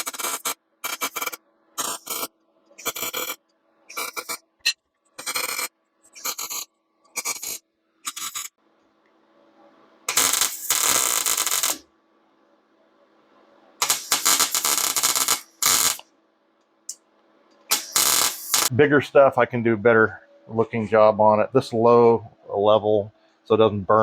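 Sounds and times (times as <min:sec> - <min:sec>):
welder arc crackling: 0:00.0 - 0:04.4, 0:05.2 - 0:08.6, 0:10.1 - 0:11.9, 0:13.8 - 0:16.1, 0:17.7 - 0:18.8
faint welder hum: 0:00.0 - 0:12.0, 0:13.7 - 0:22.1.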